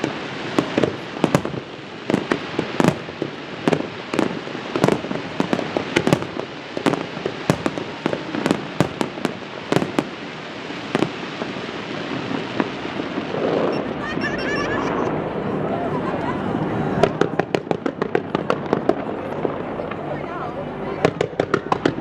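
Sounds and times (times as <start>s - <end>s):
rumbling explosions: 0.0s - 13.7s
fireworks bangs: 0.0s - 15.2s, 17.0s - 20.2s, 21.0s - 22.0s.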